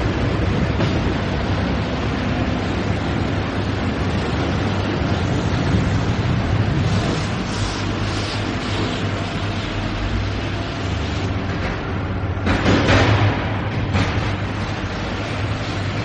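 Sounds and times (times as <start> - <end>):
factory machinery din: 0.0 - 16.0.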